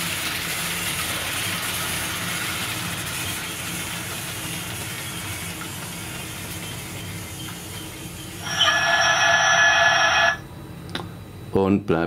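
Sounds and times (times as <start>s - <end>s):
model train hissing and rumbling: 1.1s - 10.4s.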